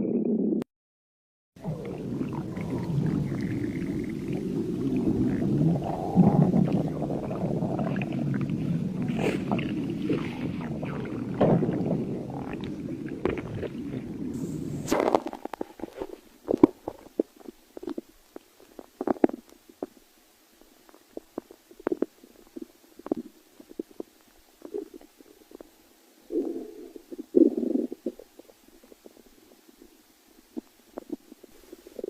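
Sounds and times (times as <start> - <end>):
stomach growling and gurgling: 0.0 - 0.6, 1.6 - 32.0.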